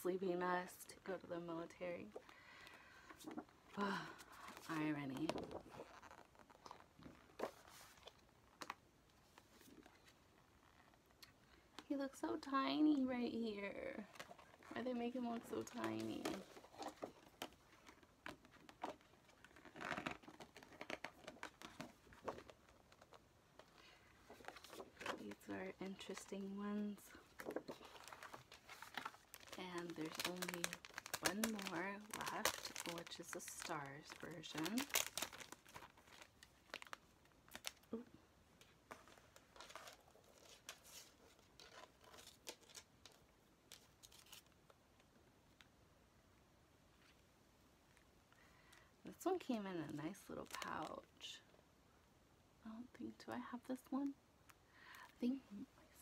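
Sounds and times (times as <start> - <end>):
paper and plastic rustling: 4.2 - 10.2, 14.0 - 37.9, 38.6 - 44.6.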